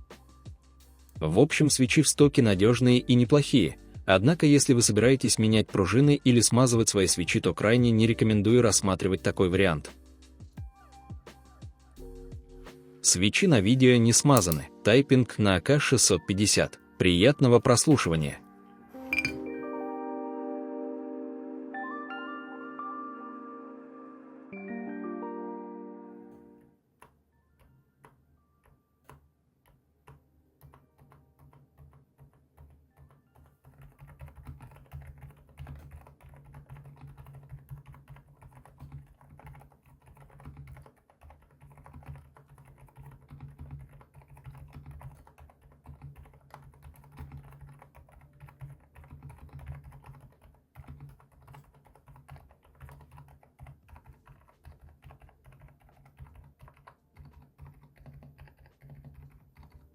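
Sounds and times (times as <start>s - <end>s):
muffled keyboard typing: 12.2s - 16.7s, 17.3s - 18.4s, 19.1s - 19.4s, 26.3s - 59.9s.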